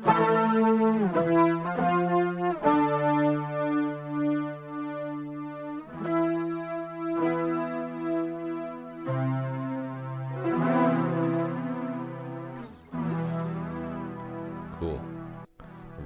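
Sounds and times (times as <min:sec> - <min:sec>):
synth lead held notes: 0:00.0 - 0:16.0.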